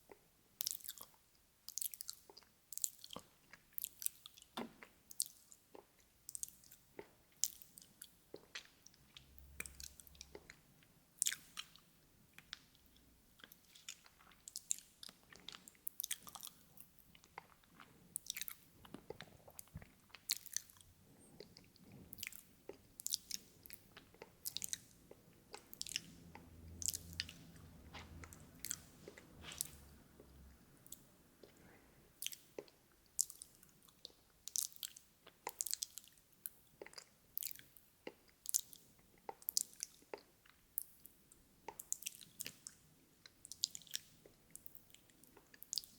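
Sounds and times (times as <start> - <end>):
lip and tongue clicks: 13.4 - 31.6.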